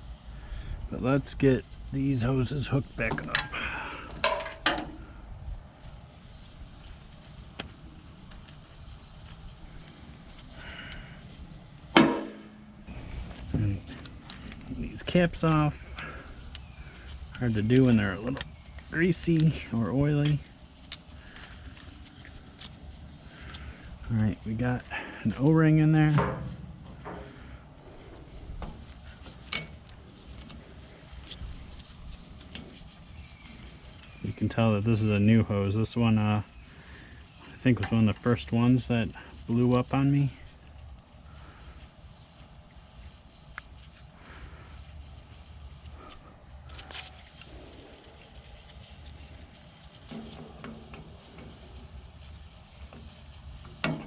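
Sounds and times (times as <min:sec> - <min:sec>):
low steady rumble: 0:00.0 - 0:54.0
tools and fittings handled: 0:03.0 - 0:05.1, 0:28.1 - 0:34.2
sharp metallic clank: 0:12.0 - 0:12.8.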